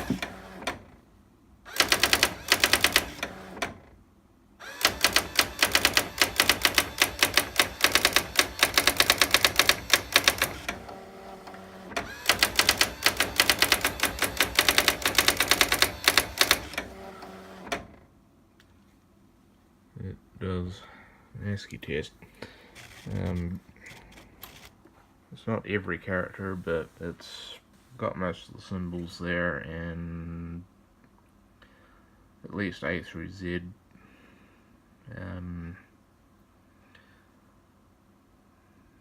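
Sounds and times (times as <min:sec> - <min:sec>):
typewriter motor whir: 0:00.0 - 0:00.9, 0:01.7 - 0:03.9, 0:04.6 - 0:17.9
electronic typewriter key strikes: 0:01.8 - 0:03.3, 0:04.7 - 0:10.8, 0:12.0 - 0:16.9.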